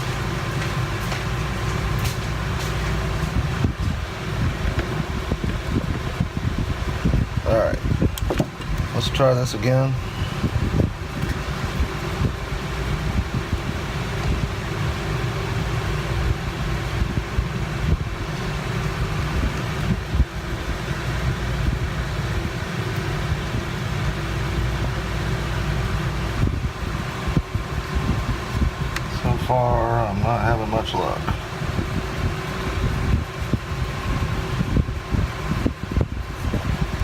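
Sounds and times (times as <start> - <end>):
droning machinery hum: 0.0 - 37.0.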